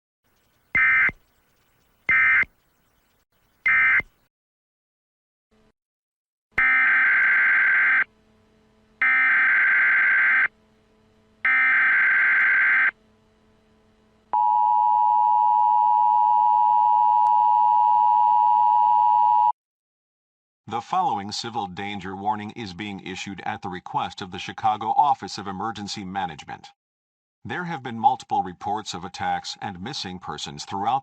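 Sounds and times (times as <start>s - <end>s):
digital data tone bursts: 0.4s - 4.1s.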